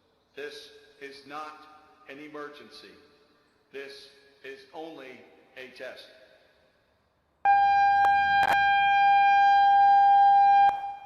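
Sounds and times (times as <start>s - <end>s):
outdoor warning siren steady tone: 7.4s - 11.0s.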